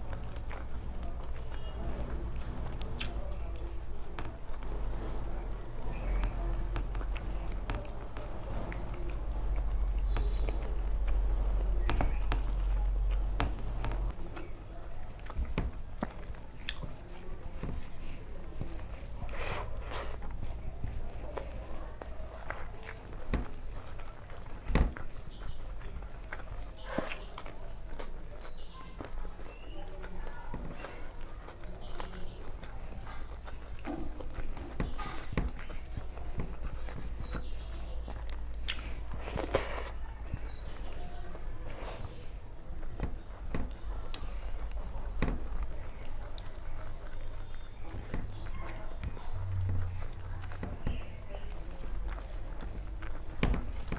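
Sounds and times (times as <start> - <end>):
chewing and mouth clicks: 0.0 - 5.2, 5.9 - 53.9
loud crunches: 30.7 - 53.9.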